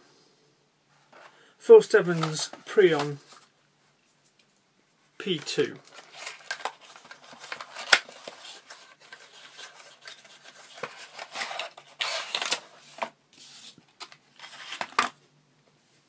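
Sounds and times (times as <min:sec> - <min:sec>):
packaging rustling: 0:05.3 - 0:15.2.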